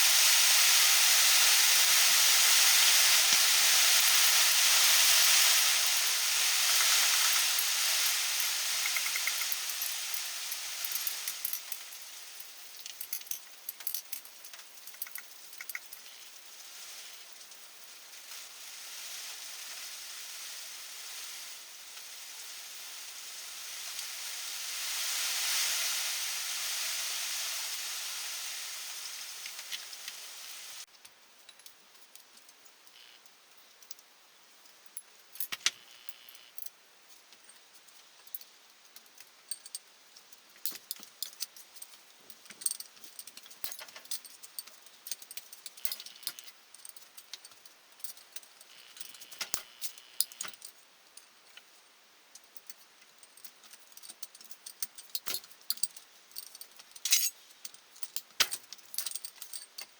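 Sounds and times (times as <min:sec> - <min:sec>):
heavy rain hissing: 0:00.0 - 0:30.9
light metallic clinks: 0:06.8 - 0:17.7, 0:31.4 - 0:59.9.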